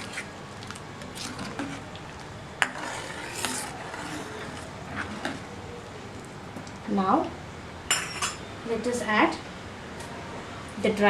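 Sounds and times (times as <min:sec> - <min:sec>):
spoon stirring in a pan: 0:00.0 - 0:05.4.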